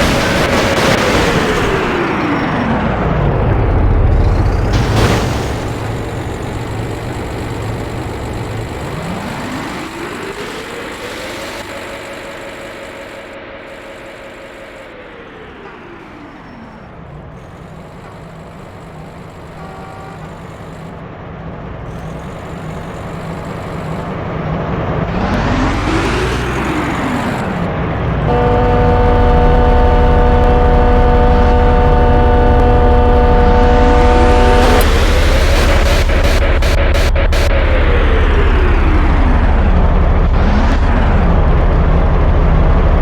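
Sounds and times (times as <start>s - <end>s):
vehicle engines revving and passing: 21.3s - 43.0s
heavy low rumble: 27.6s - 43.0s
loud held chord: 28.3s - 37.4s.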